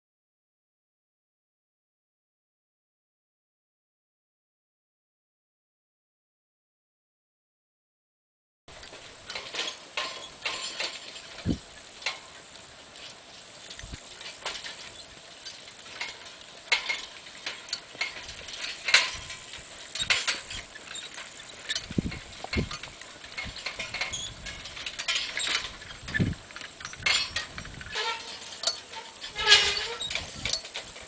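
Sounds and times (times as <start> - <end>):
harness clanking and rattling: 8.7 - 31.0
steady hiss: 8.7 - 31.0.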